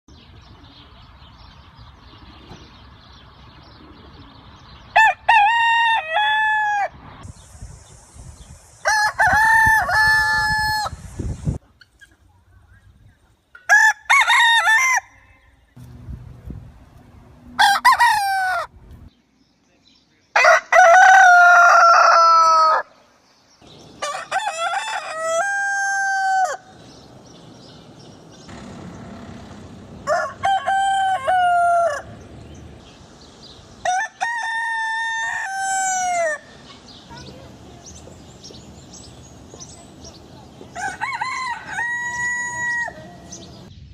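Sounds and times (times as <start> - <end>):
roosters crowing: 4.9 - 7.2, 8.8 - 11.2, 13.6 - 15.7, 17.4 - 18.8, 20.4 - 23.0, 23.6 - 36.6, 40.5 - 43.7.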